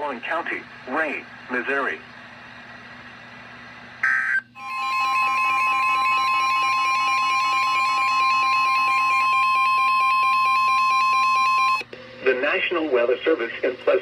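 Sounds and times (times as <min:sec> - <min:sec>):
fast-stepping electronic alarm tones: 0:04.0 - 0:11.8
steady alarm tone: 0:04.0 - 0:11.9.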